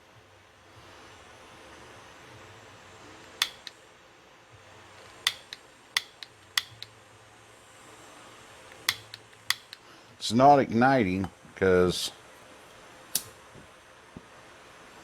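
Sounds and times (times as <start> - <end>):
soldering iron igniter clicking: 3.2 - 3.8, 5.0 - 7.0, 8.7 - 9.9, 13.1 - 13.4.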